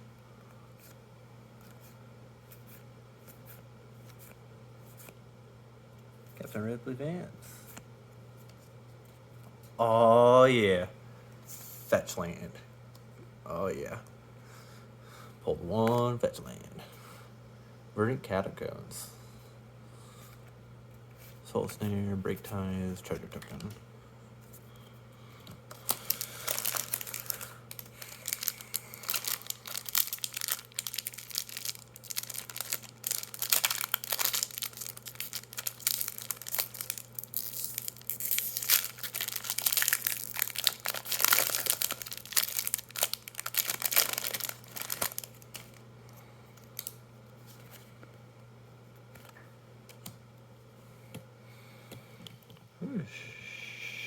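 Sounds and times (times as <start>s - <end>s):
foil wrapper tearing and crinkling: 25.7s - 45.8s, 46.7s - 47.0s.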